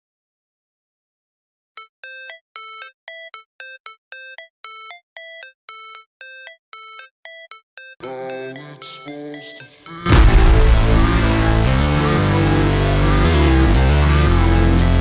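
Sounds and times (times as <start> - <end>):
short synthesizer notes: 10.1 - 15.0.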